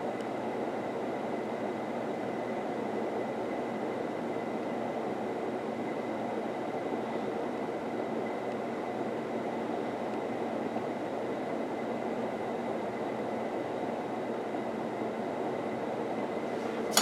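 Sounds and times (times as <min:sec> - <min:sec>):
ceiling fan running fast: 0:00.0 - 0:17.0.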